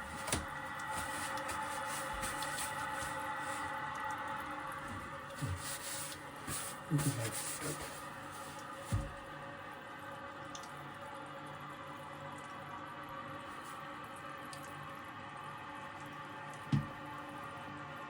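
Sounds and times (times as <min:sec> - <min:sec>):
toilet tank refilling hiss: 0:00.0 - 0:08.7.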